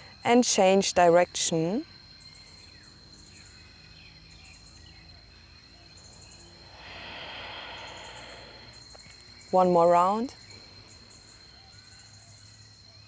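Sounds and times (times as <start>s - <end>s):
high insect drone: 0.0s - 13.0s
faint bird calls: 5.8s - 9.2s
soft hiss: 6.1s - 12.7s.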